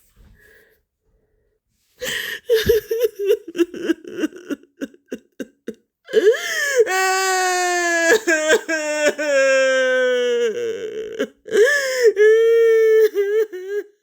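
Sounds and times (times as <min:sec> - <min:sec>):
girl crying and wailing: 0:02.0 - 0:13.9.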